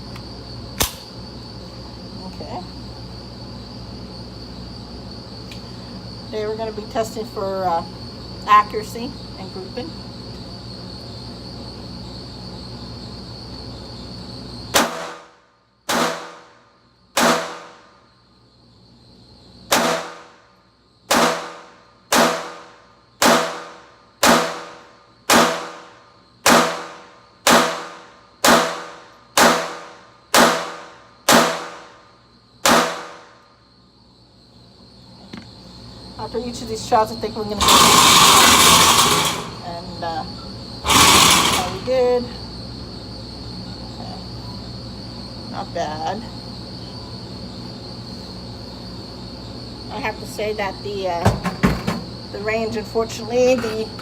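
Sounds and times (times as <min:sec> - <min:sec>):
pistol shots with echo: 0:14.8 - 0:15.2, 0:15.9 - 0:16.5, 0:17.2 - 0:17.8, 0:19.7 - 0:20.3, 0:21.1 - 0:31.9, 0:32.6 - 0:33.3.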